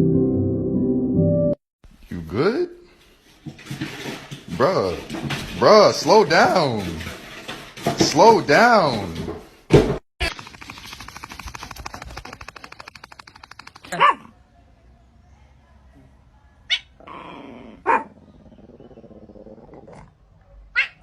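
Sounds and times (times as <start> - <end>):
fast even patter: 10.2 - 14.4
dog barking: 13.8 - 14.4, 17.8 - 18.2, 20.7 - 21.0.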